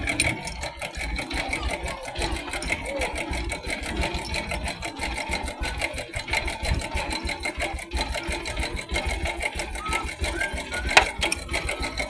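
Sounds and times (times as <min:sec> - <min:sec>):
motorcycle engine clattering: 0:10.4 - 0:12.0.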